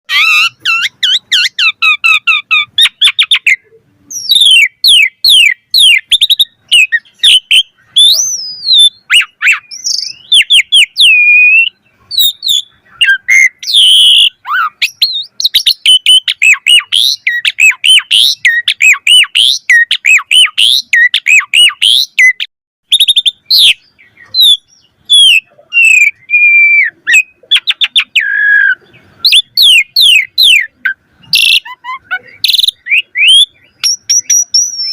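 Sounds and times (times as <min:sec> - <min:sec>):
starling singing: 0:00.1 - 0:34.9.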